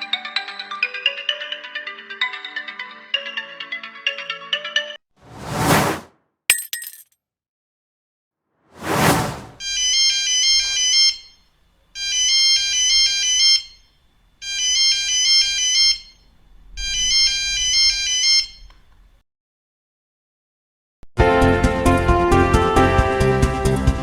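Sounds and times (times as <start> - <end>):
short whoosh: 5.2 - 6.1, 8.8 - 9.6.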